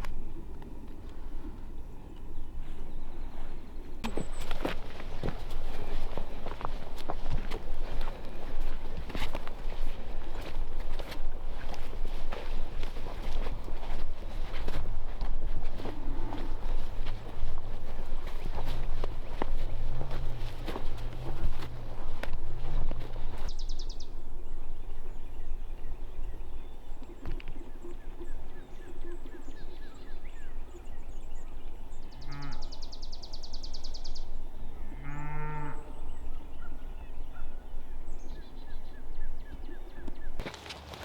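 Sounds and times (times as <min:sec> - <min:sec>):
birds trilling and chirping: 0:00.0 - 0:41.0
cow mooing: 0:32.2 - 0:32.7, 0:34.9 - 0:35.9.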